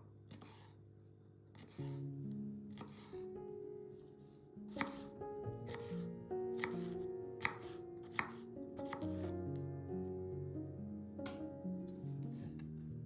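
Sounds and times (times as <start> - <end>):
knife chopping on cutting board: 0.3 - 0.7, 1.5 - 2.0, 2.7 - 3.2, 4.7 - 6.0, 6.6 - 9.3
background music: 1.9 - 13.0.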